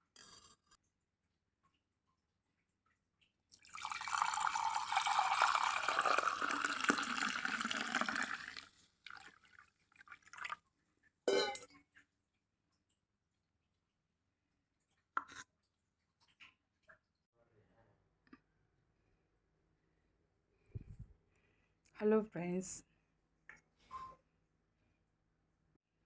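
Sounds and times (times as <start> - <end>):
liquid pouring: 3.6 - 10.7.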